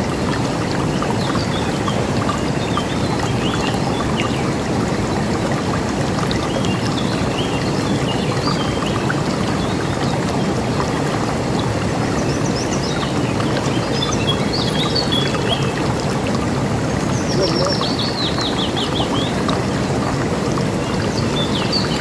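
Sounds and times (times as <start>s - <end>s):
river water rushing: 0.0s - 22.0s
small birds chirping: 17.1s - 19.4s.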